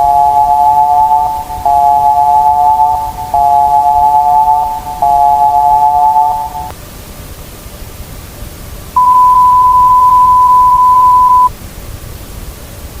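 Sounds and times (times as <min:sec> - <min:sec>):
steady electronic beep tone: 0:00.0 - 0:06.7, 0:09.0 - 0:11.5
background hiss: 0:00.0 - 0:11.5.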